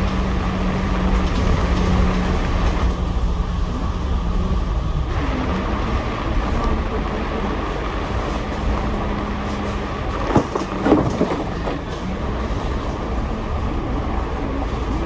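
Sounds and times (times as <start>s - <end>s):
bus engine and road rumble: 0.0s - 15.0s
knocks and rattles: 10.1s - 12.0s.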